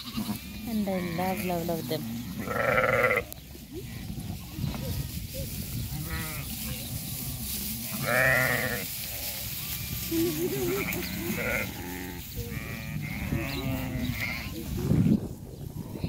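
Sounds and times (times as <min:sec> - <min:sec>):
sheep bleating: 0:00.0 - 0:04.1, 0:05.9 - 0:06.5, 0:07.9 - 0:15.2.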